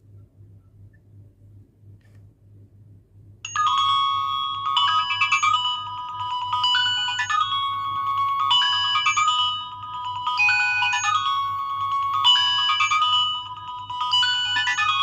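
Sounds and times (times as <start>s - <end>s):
polyphonic ringtone melody: 3.5s - 15.0s.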